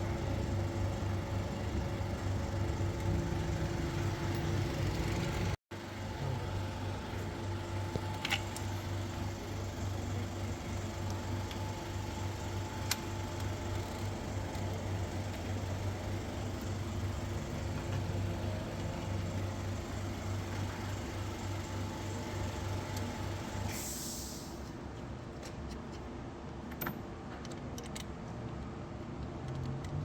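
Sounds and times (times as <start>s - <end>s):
car engine idling: 0.0s - 23.6s
short hiss: 23.7s - 24.6s.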